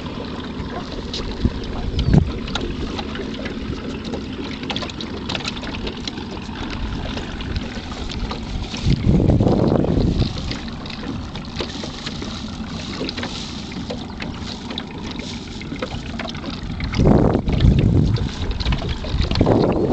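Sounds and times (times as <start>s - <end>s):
wind buffeting microphone: 0.0s - 19.9s
low wind gusts: 6.6s - 19.9s.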